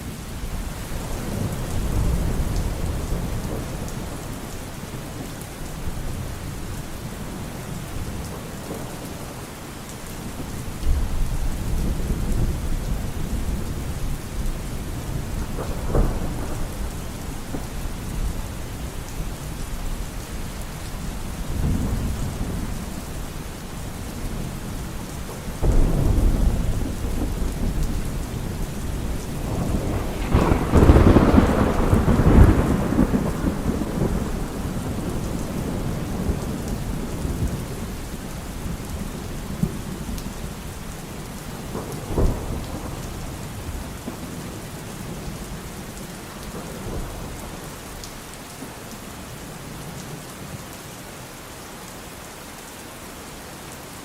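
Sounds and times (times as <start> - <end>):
steady rain: 0.0 - 54.0
rolling thunder: 10.6 - 47.8.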